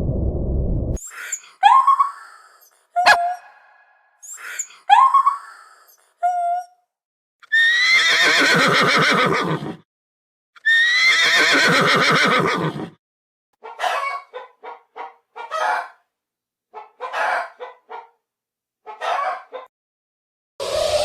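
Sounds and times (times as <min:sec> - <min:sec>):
hen cackling: 0:03.0 - 0:03.8
horse whinnying: 0:07.5 - 0:09.8, 0:10.6 - 0:13.0.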